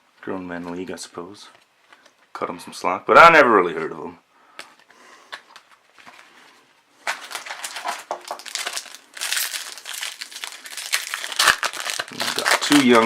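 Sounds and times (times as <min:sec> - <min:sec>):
foil wrapper crinkling: 0:05.4 - 0:13.0.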